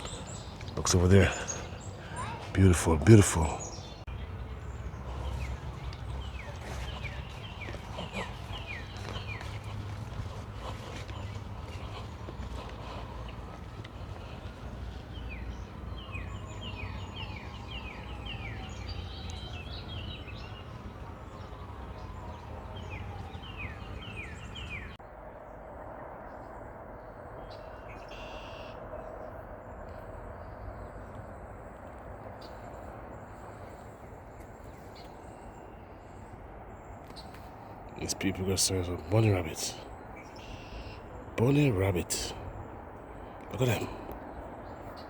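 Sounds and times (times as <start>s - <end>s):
steady low rumble: 0.0s - 16.6s
faint bird chirps: 0.0s - 25.0s, 32.4s - 45.0s
songbird singing: 0.0s - 25.0s, 26.4s - 45.0s.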